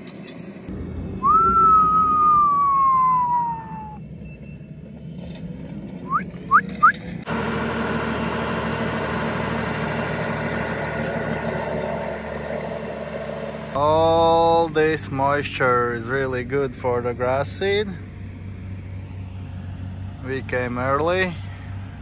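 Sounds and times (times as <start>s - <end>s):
engine running: 0.7s - 22.0s
long falling whistle: 1.2s - 4.1s.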